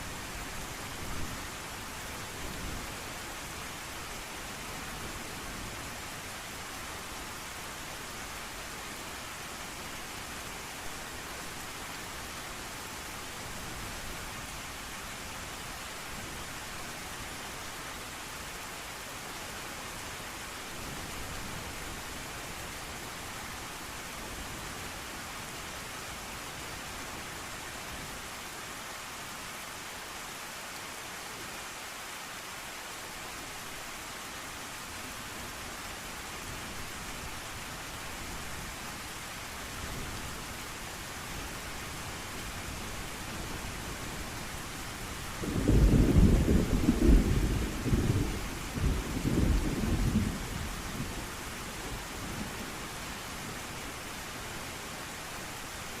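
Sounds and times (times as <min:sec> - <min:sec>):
heavy rain: 0:00.0 - 0:56.0
low rumbles of thunder: 0:45.4 - 0:51.2.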